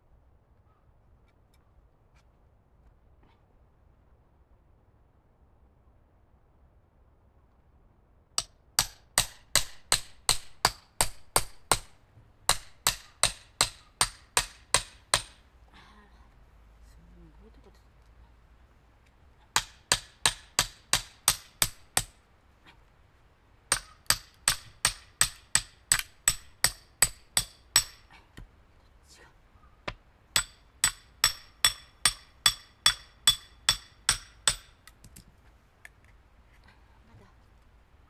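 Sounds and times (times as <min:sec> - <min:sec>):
hammer striking steel wedge: 0:08.4 - 0:11.9, 0:12.5 - 0:15.4, 0:19.6 - 0:22.2, 0:23.7 - 0:28.1, 0:30.4 - 0:34.9.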